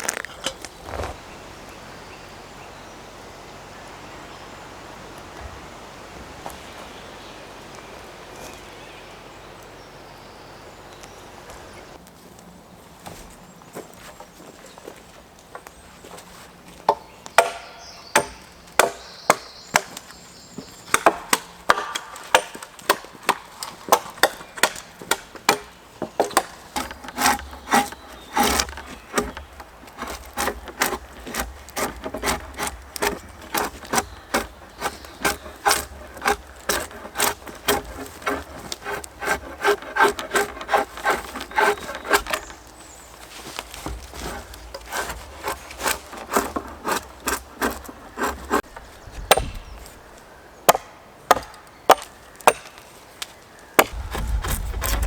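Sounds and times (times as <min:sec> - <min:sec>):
sharp knocks on timber: 0:49.2 - 0:49.9.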